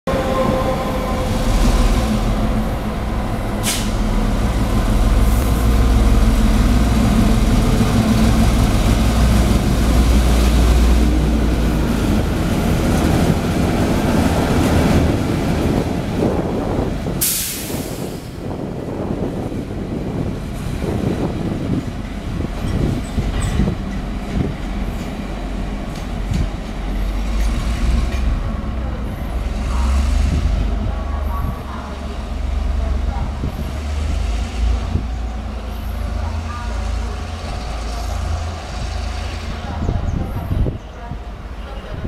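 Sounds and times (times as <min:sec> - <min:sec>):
train rumbling: 0:00.1 - 0:42.0
sharp air hiss: 0:03.6 - 0:04.0, 0:17.2 - 0:18.4.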